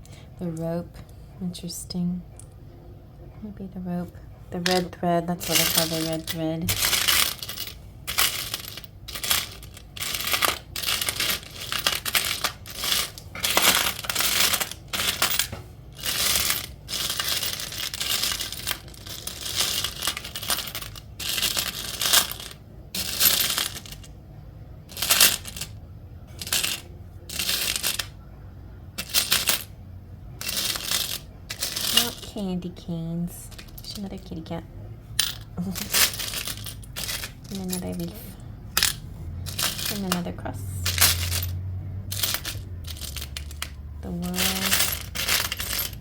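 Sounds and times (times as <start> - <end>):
metal charms clinking: 4.6 - 24.1, 24.9 - 28.1, 30.4 - 32.2, 35.2 - 46.0.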